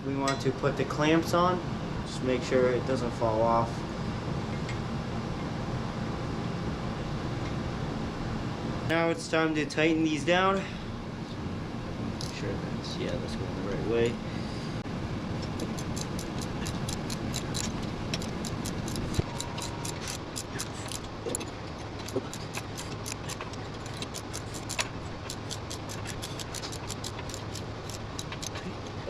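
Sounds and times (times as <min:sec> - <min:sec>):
ratchet wrench clicking: 0:15.8 - 0:28.6.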